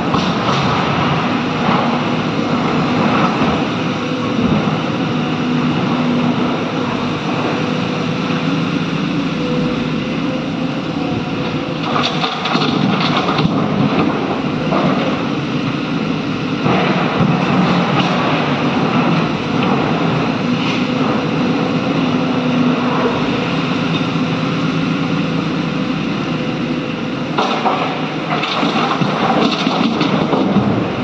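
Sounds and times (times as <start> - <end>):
heavy diesel engines running: 0.0 - 31.0.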